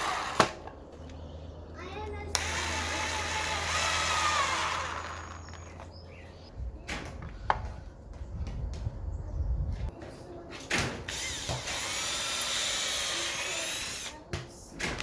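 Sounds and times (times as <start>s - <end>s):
power tool running: 2.3s - 5.8s.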